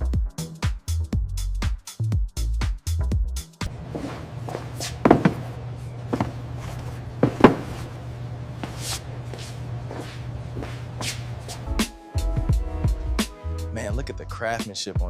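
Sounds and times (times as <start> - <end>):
steady low hum: 3.6 - 13.1
sharp thuds: 3.7 - 6.4.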